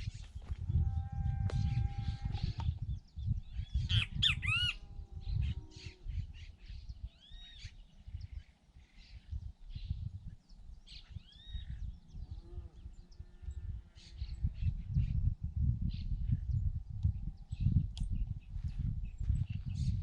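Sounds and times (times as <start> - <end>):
birds chirping and squawking: 0.0 - 15.2
wind rumble on microphone: 0.0 - 20.0.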